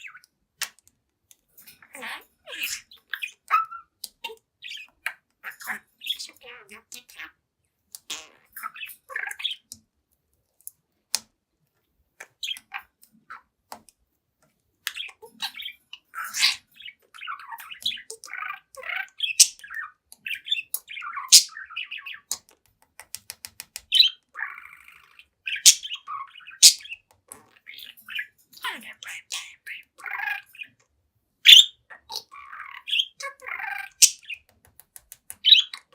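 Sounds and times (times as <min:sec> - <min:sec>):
budgerigar chattering: 0:02.0 - 0:07.3, 0:14.9 - 0:22.4, 0:23.9 - 0:30.8, 0:31.5 - 0:34.5, 0:35.4 - 0:35.9.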